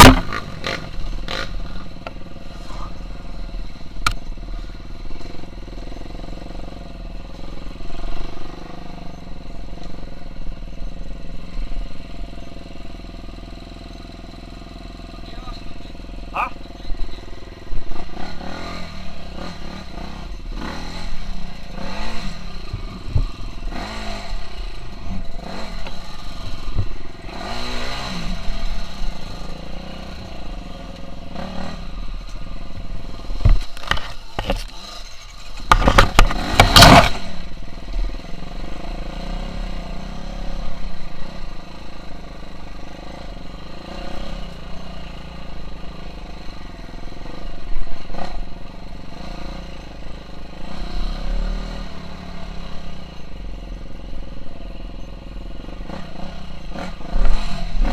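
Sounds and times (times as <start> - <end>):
motocross engine revving: 0.0 - 3.8, 12.1 - 54.3, 55.3 - 57.9.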